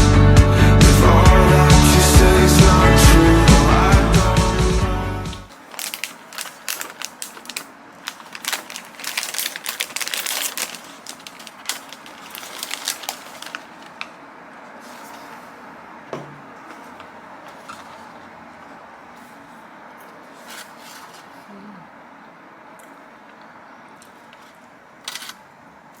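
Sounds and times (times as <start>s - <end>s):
small hard objects rattling: 5.4s - 14.0s.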